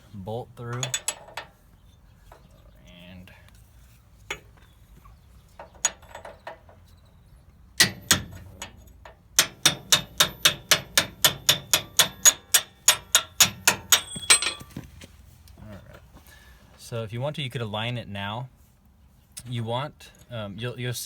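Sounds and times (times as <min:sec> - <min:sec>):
hammer blows on metal: 0:09.4 - 0:14.7.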